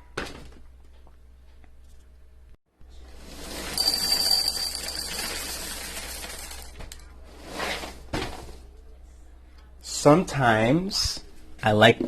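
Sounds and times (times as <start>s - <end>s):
cereal pouring into a bowl: 3.4s - 6.8s.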